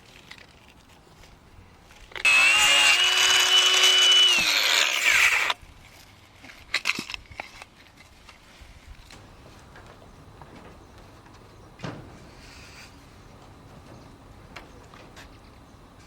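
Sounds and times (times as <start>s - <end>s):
power tool running and winding down: 2.2s - 5.6s.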